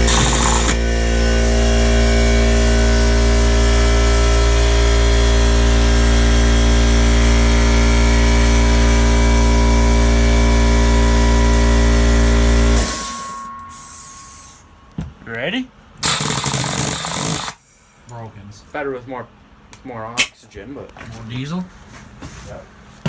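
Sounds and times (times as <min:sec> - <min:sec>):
air compressor motor running: 0:00.0 - 0:14.7, 0:16.0 - 0:17.6.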